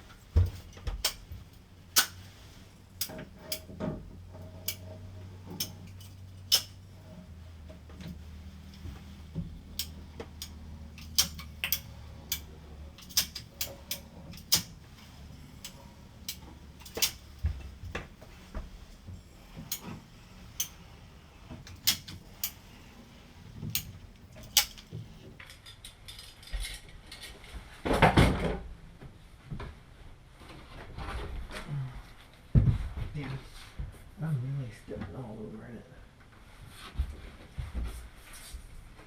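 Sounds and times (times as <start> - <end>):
tools clicking and knocking: 0.0 - 26.5.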